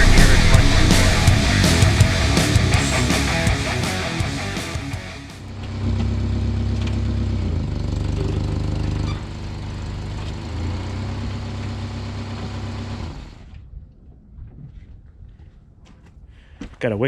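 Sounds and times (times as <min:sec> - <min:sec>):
car engine with exhaust leak: 0:05.4 - 0:13.6.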